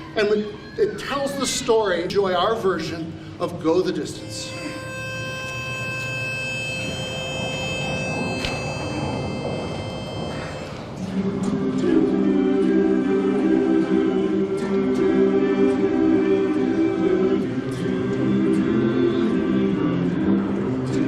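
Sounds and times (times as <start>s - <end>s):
men's chorus singing a cappella: 11.0s - 21.0s.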